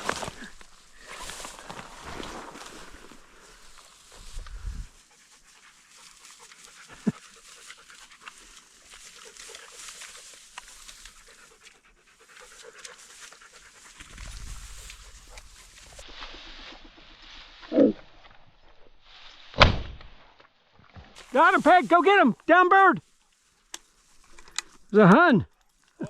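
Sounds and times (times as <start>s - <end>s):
dog panting rapidly: 4.1s - 15.6s.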